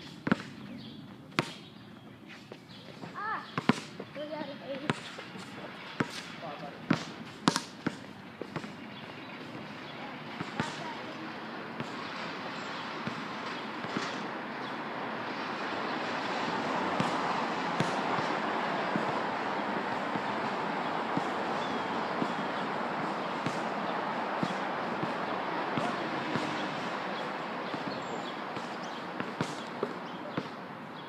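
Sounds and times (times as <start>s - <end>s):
basketball bouncing: 0.2s - 0.6s, 3.5s - 4.1s, 4.7s - 11.1s, 11.8s - 14.7s, 16.5s - 30.6s
steady rushing noise: 5.0s - 31.0s.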